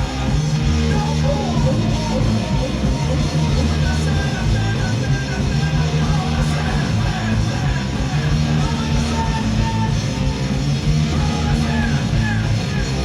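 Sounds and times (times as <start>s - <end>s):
distorted guitar-like tones: 0.0s - 13.0s
loud live music with low drone: 0.0s - 13.0s.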